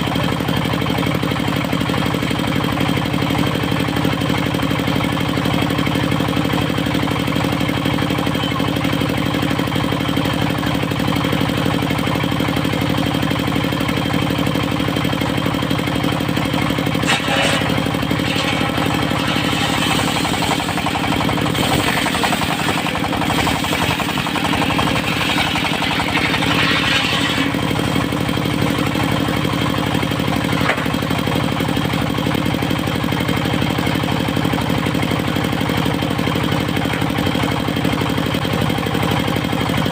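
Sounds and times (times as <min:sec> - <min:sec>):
diesel engine running: 0:00.0 - 0:39.9
saw blade cutting wood: 0:17.0 - 0:28.2.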